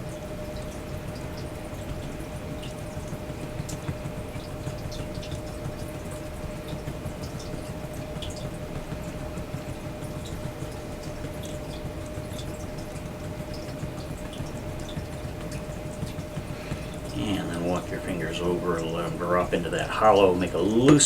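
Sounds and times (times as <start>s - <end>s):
faint steady hum: 0.0s - 21.0s
running water: 0.0s - 21.0s
small water drips: 0.0s - 21.0s.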